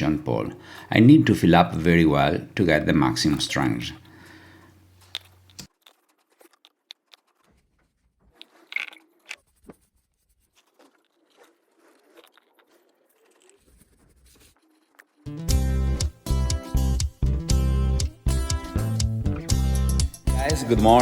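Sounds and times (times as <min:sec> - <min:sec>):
clicks and scrapes of hand work: 0:05.0 - 0:15.3.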